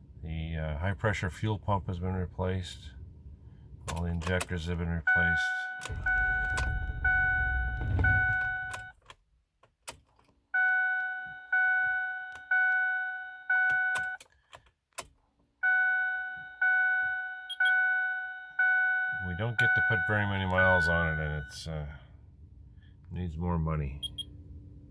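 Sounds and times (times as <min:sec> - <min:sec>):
vehicle warning chime dinging: 0:05.0 - 0:09.0, 0:10.6 - 0:14.2, 0:15.6 - 0:22.0
low rumble: 0:05.9 - 0:08.8.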